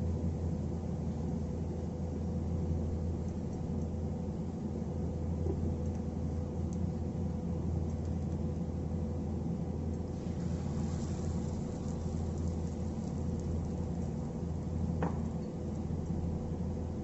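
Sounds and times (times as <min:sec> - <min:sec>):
low mechanical hum: 0:00.0 - 0:17.0
faint hiss: 0:10.1 - 0:15.4.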